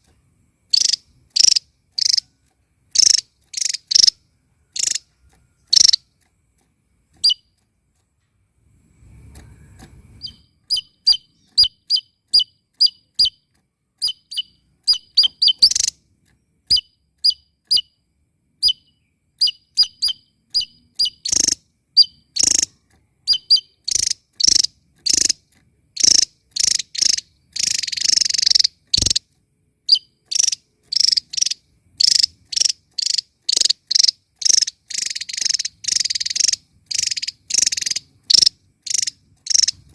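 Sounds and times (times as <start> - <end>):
bird high sharp chirps: 0.7 - 6.1, 7.1 - 7.6, 9.4 - 16.0, 16.6 - 18.0, 18.6 - 39.9.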